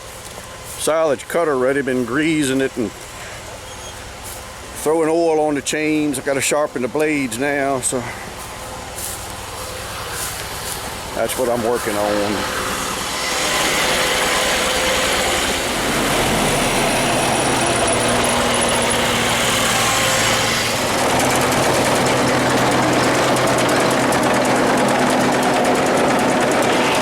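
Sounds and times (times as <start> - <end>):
fast mechanical rattle: 9.0 - 27.0.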